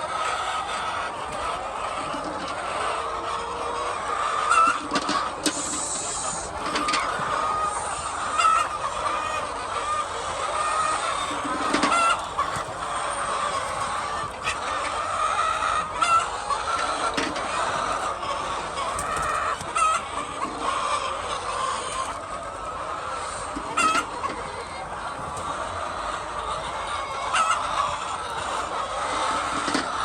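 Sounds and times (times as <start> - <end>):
flock of hens clucking: 0.0 - 30.0
hen calls: 4.5 - 14.3.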